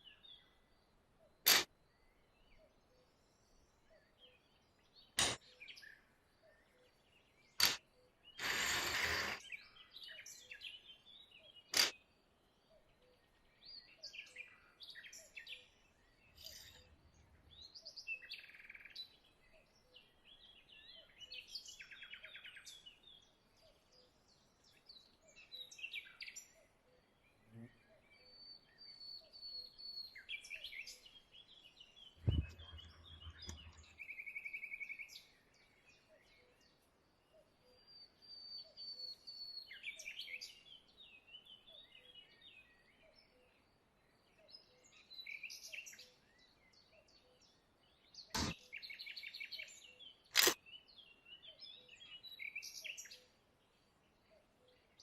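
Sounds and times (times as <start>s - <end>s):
small birds chirping and singing: 0.0s - 55.0s
dull thump: 32.2s - 33.9s.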